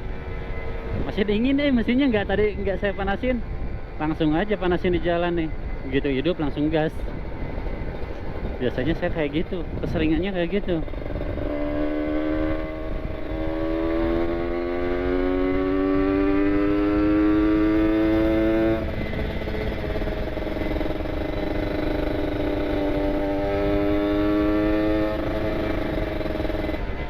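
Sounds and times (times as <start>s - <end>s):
motorcycle engine accelerating: 7.0s - 27.0s.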